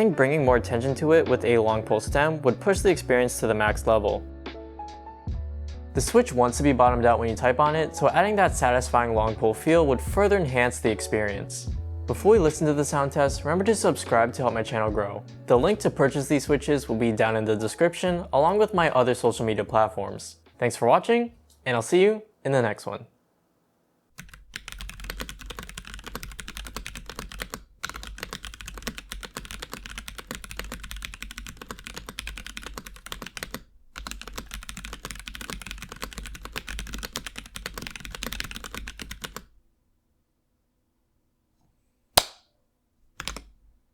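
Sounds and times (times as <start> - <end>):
fast mechanical keyboard typing: 24.2 - 39.5
sharp click: 42.2 - 42.5.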